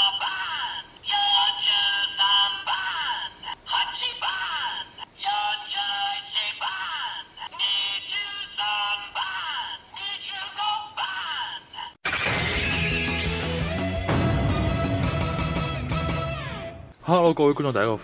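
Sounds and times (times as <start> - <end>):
toy synthesized voice calls: 0.0 - 12.0.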